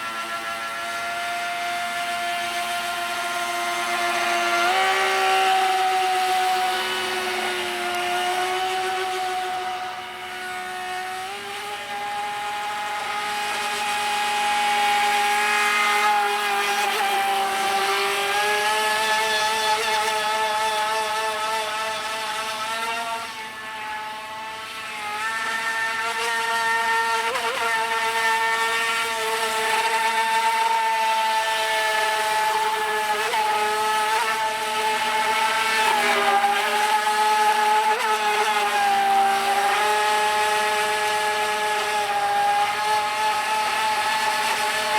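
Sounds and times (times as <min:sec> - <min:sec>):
electric motor high whine: 0:00.0 - 0:44.9.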